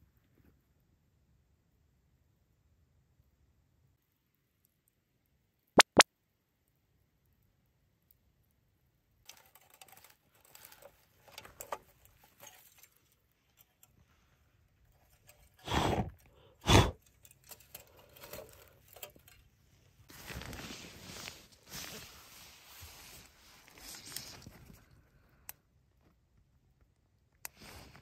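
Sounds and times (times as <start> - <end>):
handling rustles and clicks: 9.3 - 14.0, 17.0 - 22.2.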